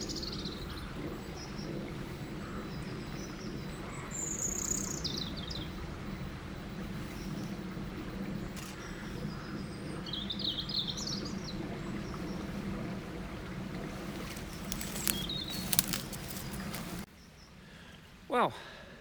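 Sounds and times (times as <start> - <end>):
river running: 0.0 - 19.0
sharp clicks: 8.5 - 9.2.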